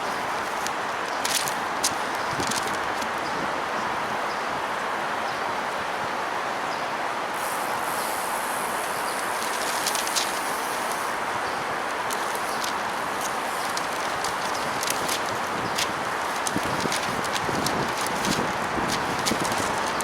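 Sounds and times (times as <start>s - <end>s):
short crackling rustles: 0.0s - 3.4s, 7.4s - 20.0s
strong wind blowing: 0.0s - 20.0s.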